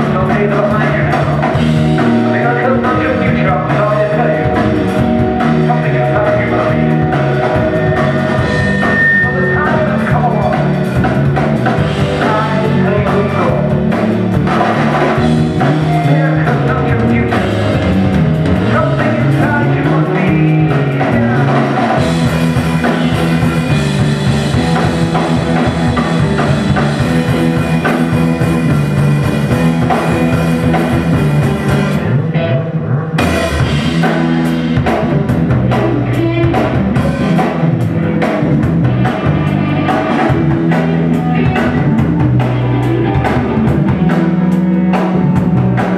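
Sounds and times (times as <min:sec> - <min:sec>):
person singing: 0:00.0 - 0:22.2
bass guitar: 0:00.0 - 0:45.9
drum kit: 0:00.0 - 0:45.9
electric guitar: 0:00.0 - 0:45.9.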